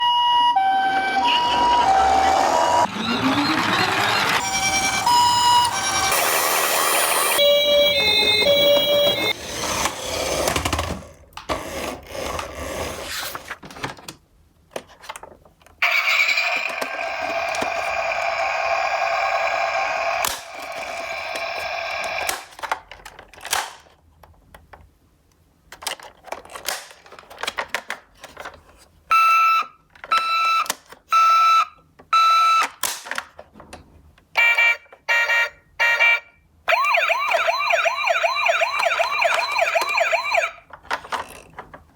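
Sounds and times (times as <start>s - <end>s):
warbling toy siren: 0.0s - 9.4s, 15.8s - 22.2s, 34.4s - 40.6s.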